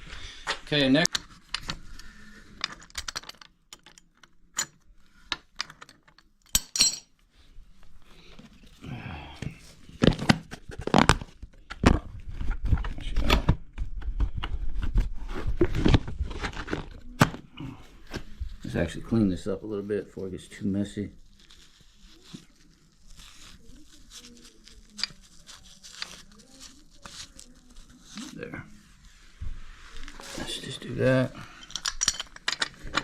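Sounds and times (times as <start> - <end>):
metal plumbing tools clinking: 2.6 - 7.1, 31.4 - 33.0.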